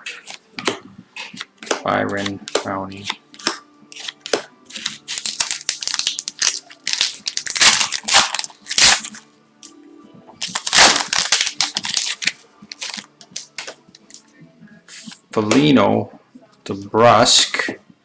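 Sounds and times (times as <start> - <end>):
foil wrappers crinkling: 0.1 - 9.3, 10.4 - 14.2.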